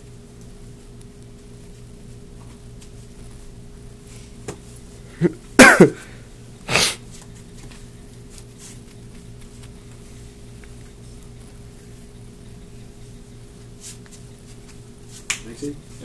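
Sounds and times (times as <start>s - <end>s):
person sneezing: 5.2s - 7.0s.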